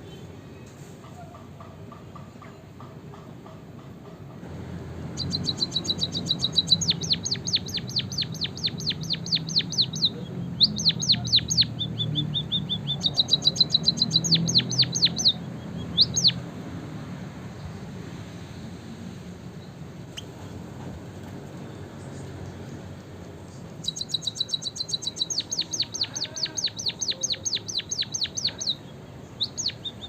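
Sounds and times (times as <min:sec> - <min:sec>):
finch singing trills: 0:05.1 - 0:16.4, 0:23.8 - 0:30.0.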